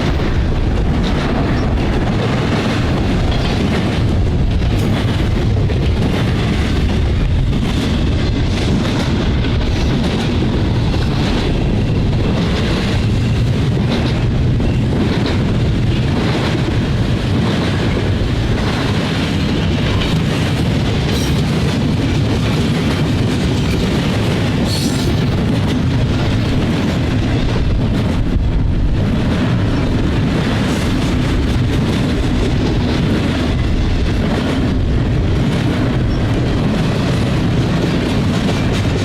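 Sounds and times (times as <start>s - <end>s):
clacks over rail joints: 0.0s - 39.0s
freight train wheels rumbling: 0.0s - 39.0s.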